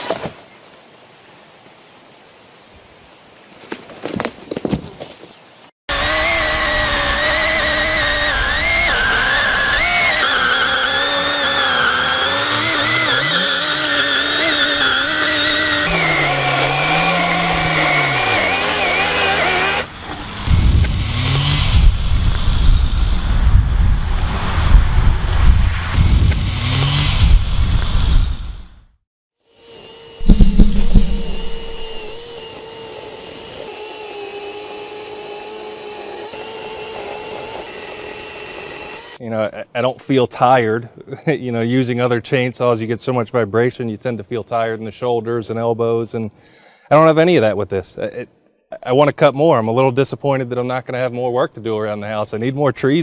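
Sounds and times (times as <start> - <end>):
electric chainsaw motor whine: 5.9 - 19.9, 29.4 - 39.2
heavy knocks: 30.2 - 32.2.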